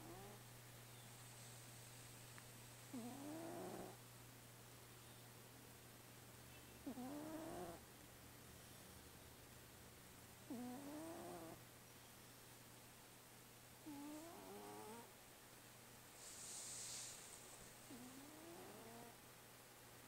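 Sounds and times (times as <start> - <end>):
cat snoring: 0.0 - 0.4, 2.9 - 4.0, 6.8 - 7.8, 10.5 - 11.6, 13.8 - 15.1, 16.2 - 17.2, 17.9 - 19.2.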